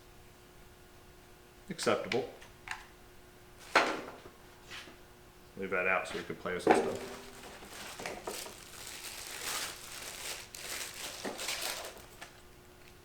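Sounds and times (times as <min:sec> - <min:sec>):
plastic packaging crinkling: 0:06.8 - 0:12.4.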